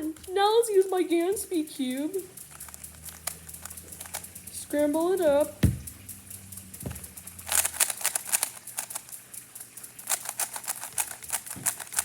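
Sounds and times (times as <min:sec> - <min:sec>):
plastic puzzle cube clacking: 0:02.3 - 0:05.9, 0:06.8 - 0:12.0.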